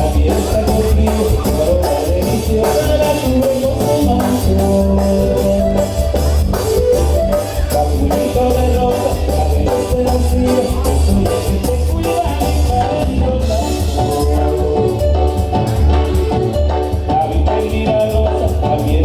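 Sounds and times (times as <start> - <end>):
loud latin dance music: 0.0 - 19.0.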